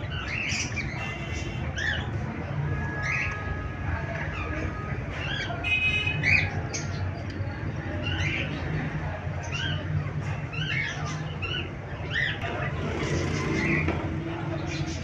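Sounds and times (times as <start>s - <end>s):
budgerigars chirping and squawking: 0.0s - 2.2s, 4.3s - 7.2s, 7.9s - 14.0s.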